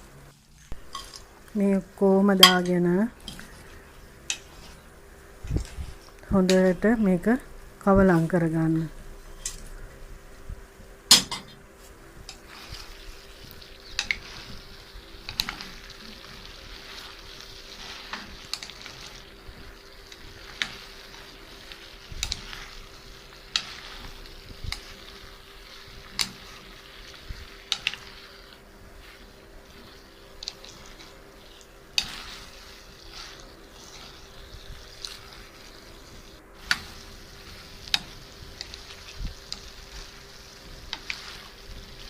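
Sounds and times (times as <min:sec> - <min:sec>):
food sizzling in a pan: 0:00.0 - 0:42.0.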